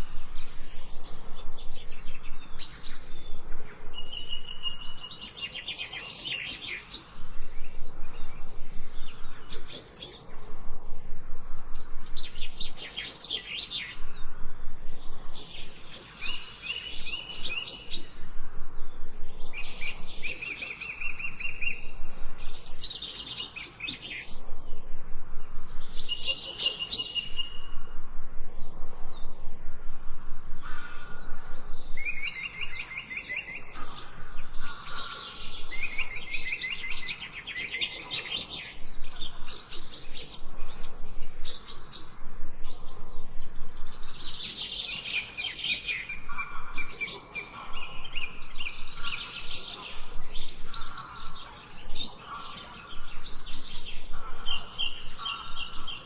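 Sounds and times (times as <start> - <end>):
songbird trilled chirps: 0.0 - 10.6.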